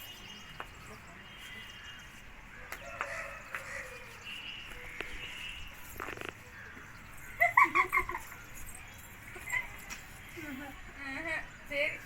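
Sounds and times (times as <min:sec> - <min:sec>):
high-pitched laughter: 0:07.4 - 0:08.4, 0:09.3 - 0:10.8.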